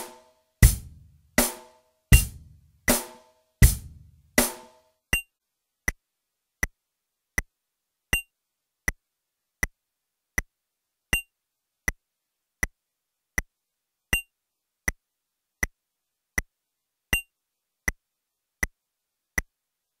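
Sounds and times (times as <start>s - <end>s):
electronic metronome clicks: 8.1s - 8.3s, 11.1s - 11.3s, 14.1s - 14.3s, 17.1s - 17.3s.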